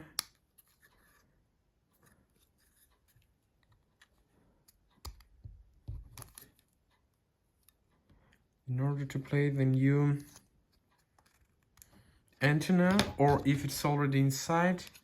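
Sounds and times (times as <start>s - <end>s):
plastic parts clicking and scraping: 1.9s - 6.8s, 10.1s - 13.9s, 14.7s - 15.0s.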